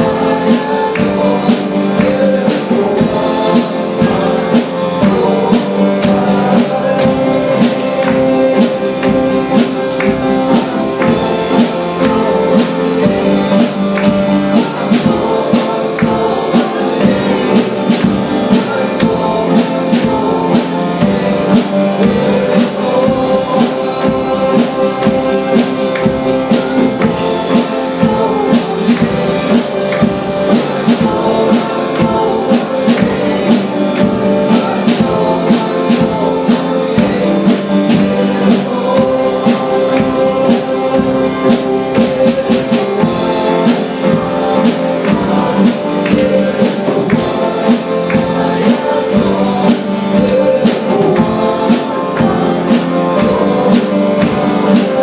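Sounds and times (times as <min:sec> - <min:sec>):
steady drum beat: 0:00.0 - 0:55.0
worship band held chords: 0:00.0 - 0:55.0.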